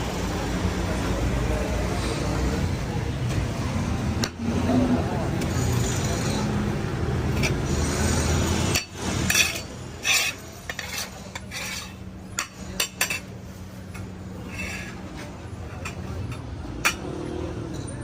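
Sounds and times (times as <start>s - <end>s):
metal utensils scraping pots: 7.3s - 17.2s.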